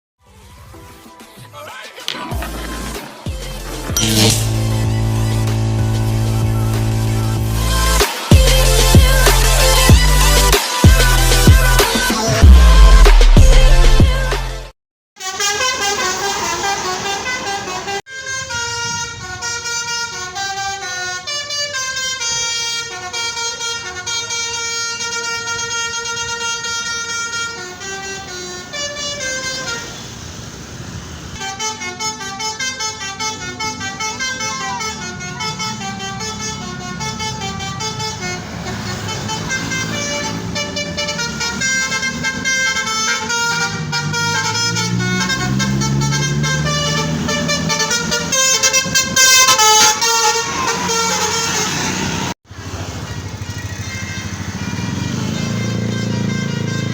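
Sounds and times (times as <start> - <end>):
bus engine running: 2.1 - 12.8, 25.8 - 56.9
multi-tone bus air horn: 3.5 - 13.0, 15.2 - 52.4, 53.6 - 56.9.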